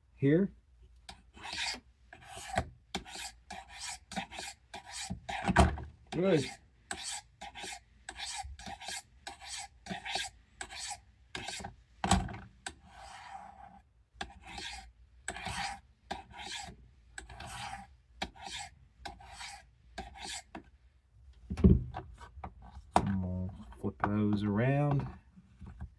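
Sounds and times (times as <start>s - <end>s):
knife rasping on sharpener: 1.1s - 5.5s, 6.2s - 11.7s, 12.7s - 20.6s.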